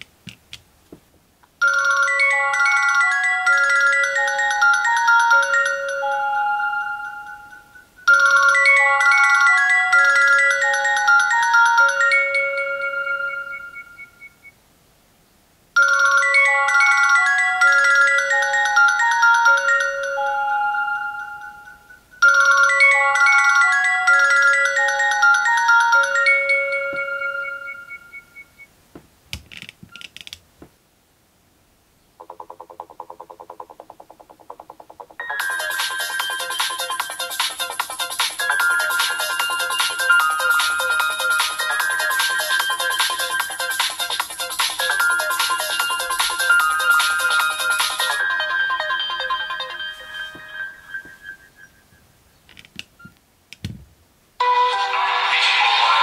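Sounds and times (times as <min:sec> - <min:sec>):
electronic ringtone melody: 0:01.6 - 0:14.5, 0:15.8 - 0:28.7, 0:35.2 - 0:52.0, 0:54.4 - 0:56.0
marimba-like ringtone: 0:01.6 - 0:14.5, 0:15.8 - 0:28.6, 0:35.0 - 0:51.9.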